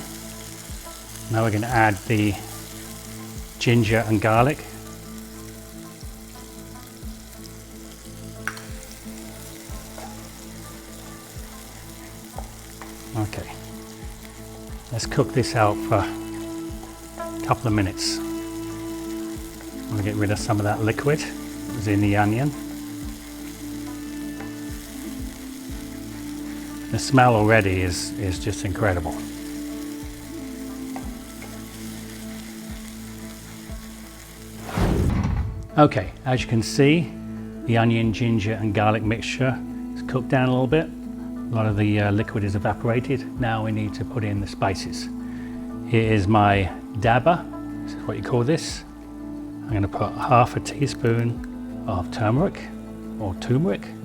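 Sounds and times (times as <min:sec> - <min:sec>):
onion paste sizzling in oil: 0:00.0 - 0:37.6.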